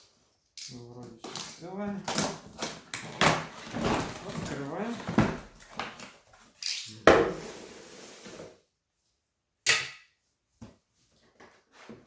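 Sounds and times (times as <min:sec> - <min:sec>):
packaging rustling: 0:02.0 - 0:06.3.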